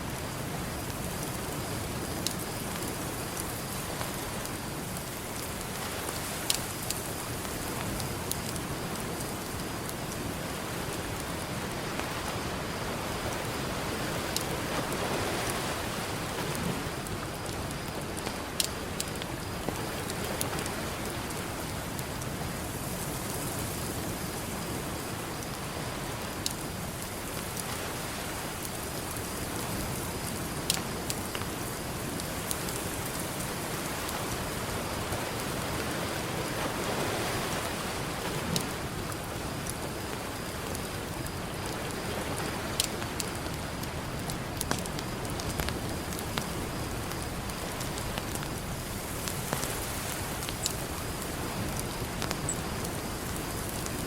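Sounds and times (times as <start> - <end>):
campfire crackling: 0.0 - 54.0
ocean surf: 10.2 - 21.8, 32.9 - 39.7
sharp pops from fire: 14.2 - 22.4, 30.2 - 33.2, 38.3 - 54.0.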